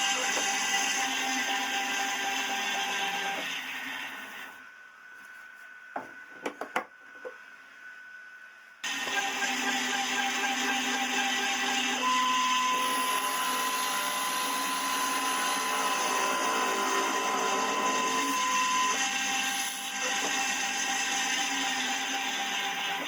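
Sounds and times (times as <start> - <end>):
lathe motor running: 8.8 - 23.0
stepper motor whine: 8.8 - 23.0.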